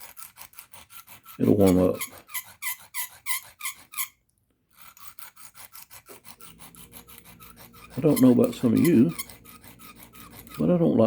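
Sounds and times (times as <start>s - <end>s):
knife blade on sharpening stone: 4.8s - 10.8s.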